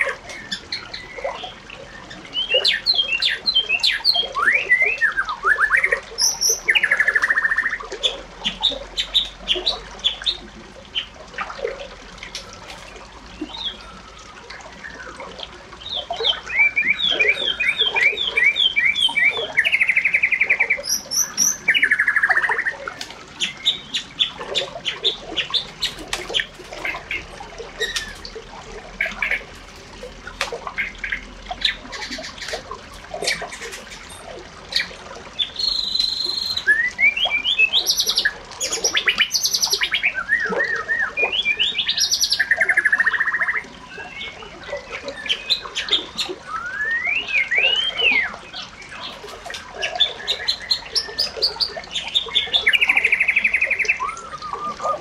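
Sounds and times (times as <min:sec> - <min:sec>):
birds chirping: 0:00.0 - 0:55.0
bird trill: 0:15.9 - 0:22.8, 0:27.8 - 0:28.3, 0:34.8 - 0:49.2.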